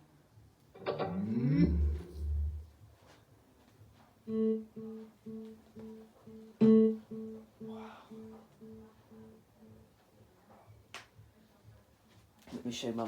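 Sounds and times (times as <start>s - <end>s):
plucked guitar-like note from speaker: 0.8s - 2.7s, 6.6s - 9.4s.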